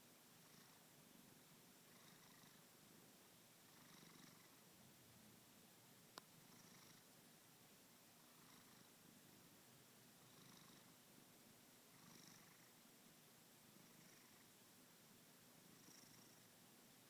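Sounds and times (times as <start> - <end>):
cat snoring: 0.4 - 0.8, 1.9 - 2.6, 3.7 - 4.6, 6.5 - 7.1, 8.2 - 8.9, 10.3 - 10.9, 11.9 - 12.8, 13.8 - 14.5, 15.7 - 16.4.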